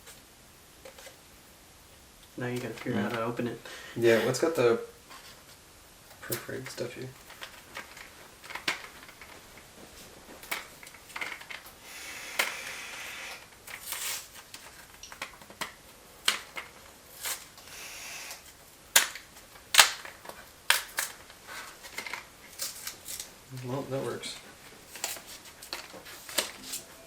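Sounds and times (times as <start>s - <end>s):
plastic packaging crinkling and tearing: 13.3s - 17.6s, 18.2s - 26.9s
plastic snapping: 18.3s - 23.7s.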